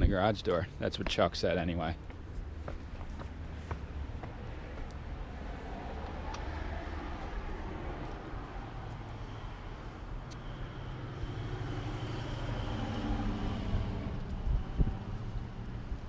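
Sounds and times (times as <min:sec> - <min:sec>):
vehicle engine rumbling: 0:00.0 - 0:16.0.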